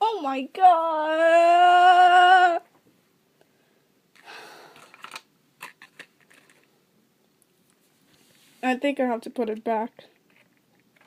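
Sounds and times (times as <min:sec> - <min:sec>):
sighing breath: 0:03.5 - 0:05.0.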